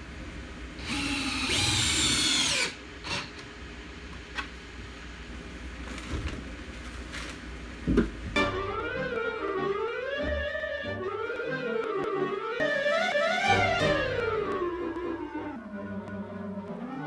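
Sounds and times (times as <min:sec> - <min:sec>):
power drill driving a screw: 0:00.8 - 0:03.5.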